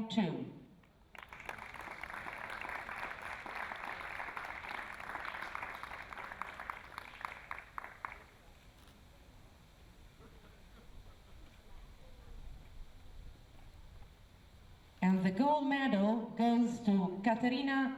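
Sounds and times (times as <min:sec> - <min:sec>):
audience applauding: 0:01.1 - 0:08.4.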